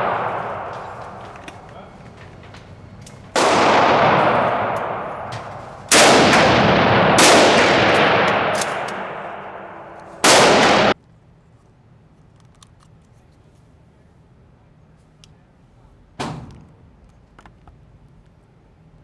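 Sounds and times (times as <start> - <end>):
rifle shots echoing: 0.0 - 11.0.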